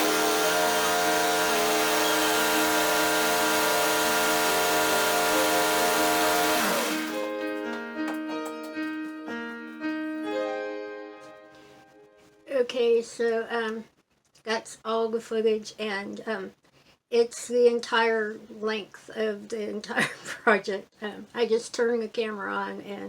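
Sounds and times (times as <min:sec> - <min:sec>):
loud steady whirring: 0:00.0 - 0:07.2
piano music: 0:05.3 - 0:12.2.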